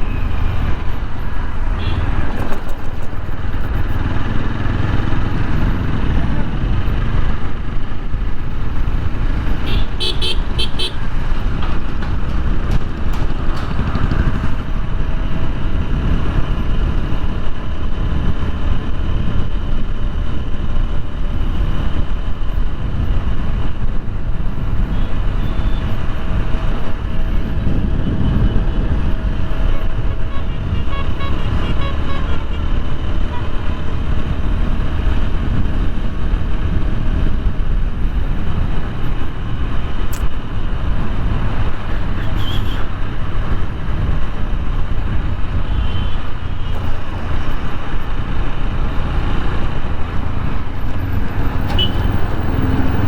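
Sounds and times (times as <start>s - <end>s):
motorcycle riding: 0.0s - 53.0s
wind rush on microphone: 0.0s - 53.0s
vehicle horns tooting: 1.6s - 2.4s, 9.6s - 11.2s, 29.7s - 34.0s, 42.2s - 42.9s, 45.7s - 46.8s, 51.6s - 53.0s.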